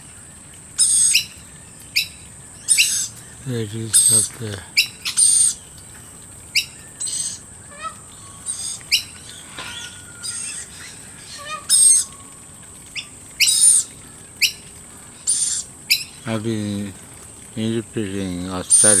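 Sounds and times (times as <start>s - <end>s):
high screechy bird calls: 0.0s - 16.3s, 18.6s - 19.0s.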